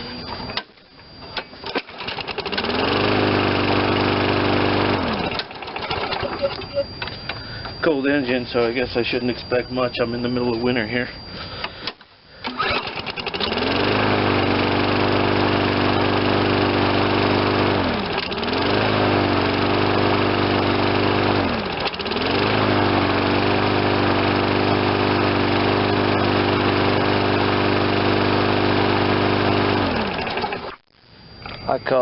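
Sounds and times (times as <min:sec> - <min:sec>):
mower engine running: 0:01.6 - 0:06.8, 0:12.4 - 0:30.8.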